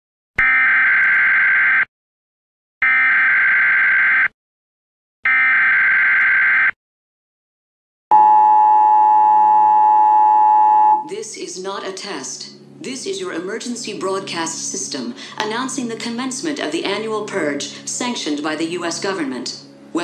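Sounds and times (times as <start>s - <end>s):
two-tone attention signal: 8.1s - 11.0s.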